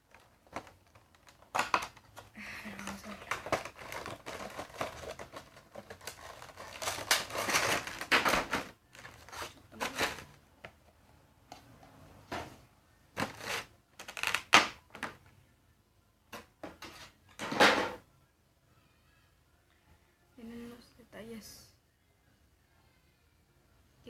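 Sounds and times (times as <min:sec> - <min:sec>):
packaging rustling and scraping: 0:00.0 - 0:10.5, 0:13.2 - 0:15.1.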